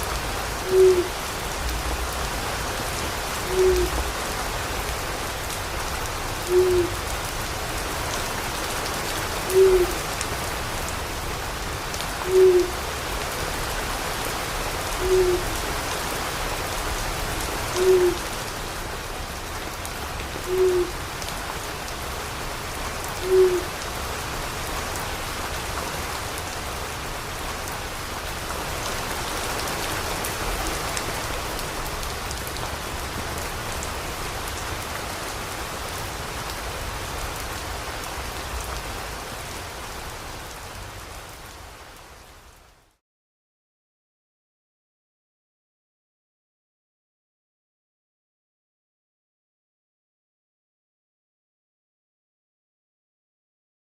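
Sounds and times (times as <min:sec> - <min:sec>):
steady rain falling: 0:00.0 - 0:43.0
owl hooting: 0:00.6 - 0:01.2, 0:03.5 - 0:04.0, 0:06.5 - 0:07.0, 0:09.5 - 0:10.0, 0:12.2 - 0:12.8, 0:15.0 - 0:15.6, 0:17.7 - 0:18.3, 0:20.4 - 0:21.0, 0:23.2 - 0:23.7.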